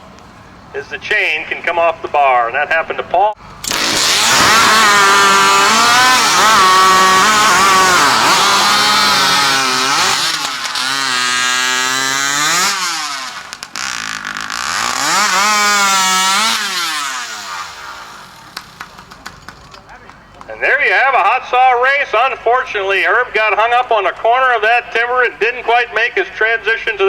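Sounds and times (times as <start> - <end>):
chainsaw cutting timber: 3.6 - 19.9.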